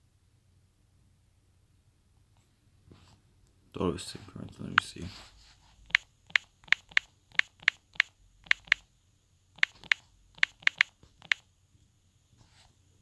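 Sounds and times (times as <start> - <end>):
typing clicks: 5.9 - 8.8, 9.6 - 11.4.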